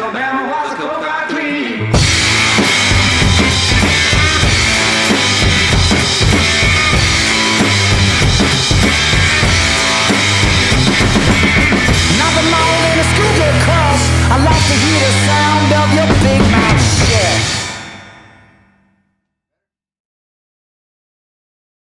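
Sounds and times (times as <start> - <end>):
blues-rock instrumental: 1.8 - 18.7
distorted electric guitar: 1.8 - 18.8
drum kit pounding: 1.9 - 18.6.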